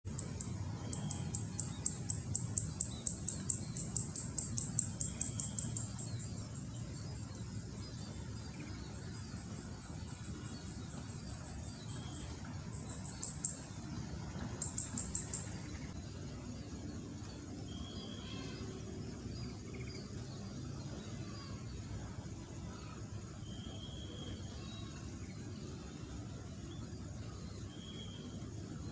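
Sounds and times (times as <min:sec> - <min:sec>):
steady low rumble: 0:00.1 - 0:28.9.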